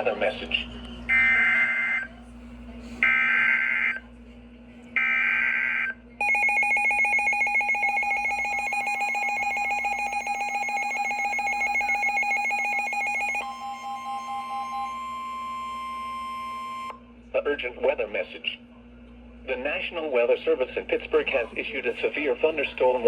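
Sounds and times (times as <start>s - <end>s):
pulsing two-tone attention signal: 5.8s - 17.0s.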